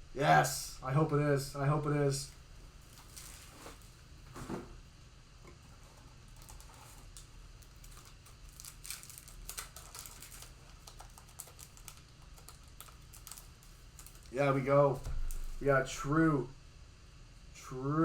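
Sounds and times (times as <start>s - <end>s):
trading cards rustling and clicking: 6.4s - 14.4s.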